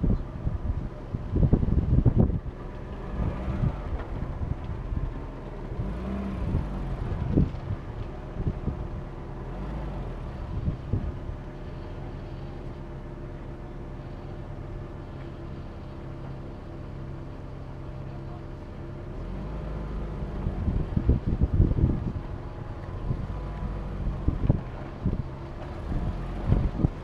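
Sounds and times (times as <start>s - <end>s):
vehicle engine at low revs: 0.0s - 27.0s.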